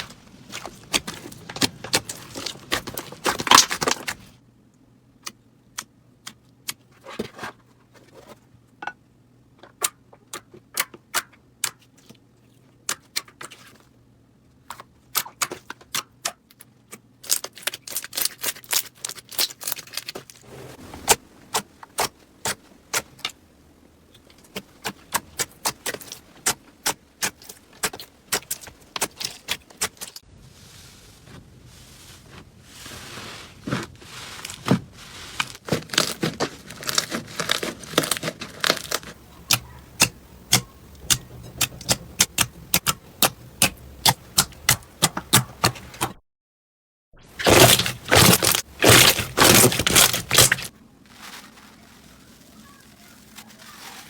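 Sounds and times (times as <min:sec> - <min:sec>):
soft rustling: 0:30.2 - 0:39.3, 0:47.5 - 0:54.0.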